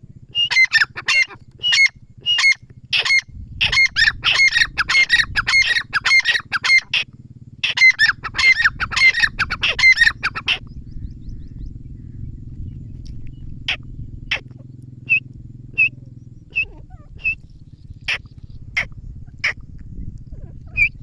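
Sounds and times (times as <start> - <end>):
francolin calling harsh notes: 0.3 - 10.6.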